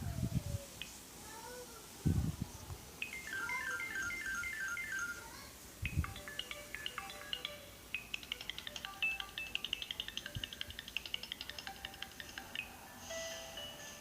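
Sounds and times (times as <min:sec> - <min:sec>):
phone ringtone: 0:03.0 - 0:14.0
ringtone with long held notes: 0:03.0 - 0:14.0.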